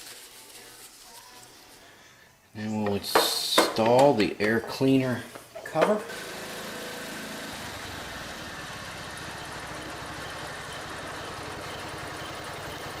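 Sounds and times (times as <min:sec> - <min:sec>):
single-cylinder engine running: 0:06.1 - 0:13.0.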